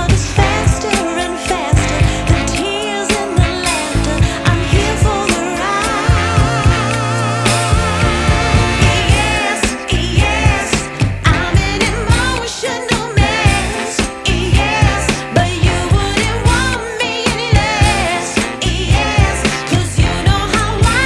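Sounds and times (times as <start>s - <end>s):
song with vocals over a beat: 0.0s - 21.0s.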